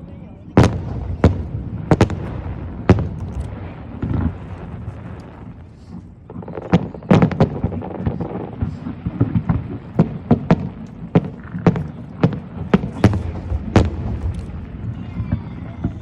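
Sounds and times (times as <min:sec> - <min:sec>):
fireworks shells bursting: 0:10.3 - 0:16.0.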